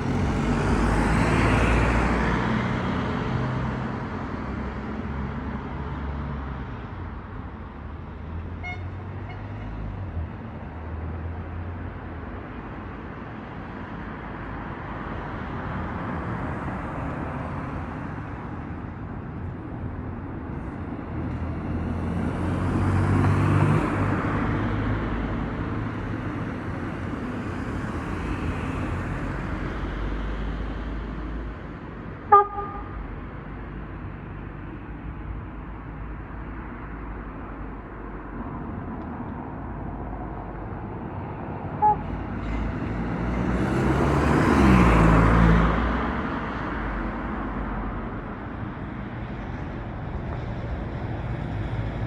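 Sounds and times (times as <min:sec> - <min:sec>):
vehicles passing: 0:00.0 - 0:52.0
short horn toots: 0:32.3 - 0:33.0, 0:41.8 - 0:42.1.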